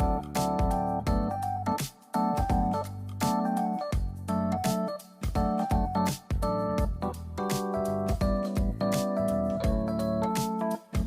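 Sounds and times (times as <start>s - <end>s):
steady drum beat: 0.0s - 3.3s, 4.0s - 4.3s, 5.2s - 9.0s, 9.6s - 11.0s
keyboard chords: 0.0s - 11.0s.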